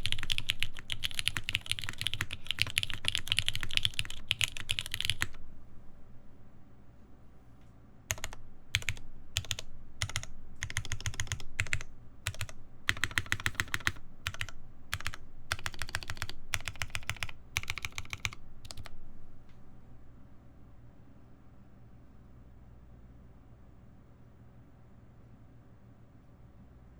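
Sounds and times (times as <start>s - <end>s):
mechanical keyboard typing: 0.0s - 5.4s, 8.1s - 19.0s.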